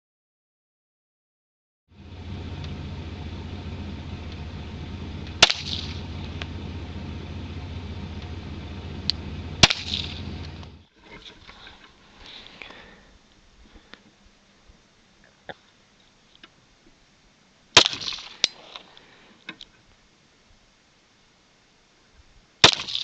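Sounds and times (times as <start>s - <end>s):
low rumble: 1.9s - 10.9s
pistol shots: 5.4s - 6.0s, 9.6s - 10.1s.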